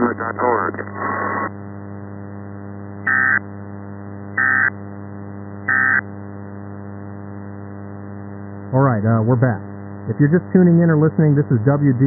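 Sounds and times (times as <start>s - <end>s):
steady low hum: 0.0s - 12.0s
digital data tone bursts: 3.1s - 3.4s, 4.4s - 4.7s, 5.7s - 6.0s.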